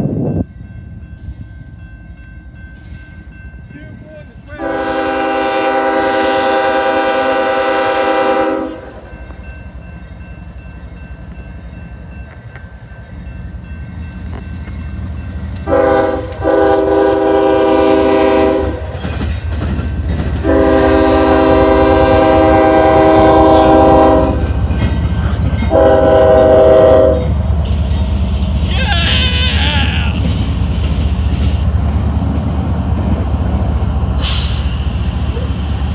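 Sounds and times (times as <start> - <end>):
train rumble: 0.0 - 35.9
locomotive air horn: 4.6 - 9.0, 15.6 - 18.8, 20.4 - 24.5, 25.7 - 27.3.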